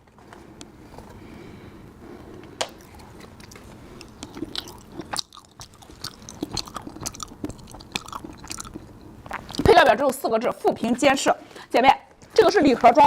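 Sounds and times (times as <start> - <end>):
person chewing food: 2.2 - 9.7
small mouth clicks: 2.6 - 9.7.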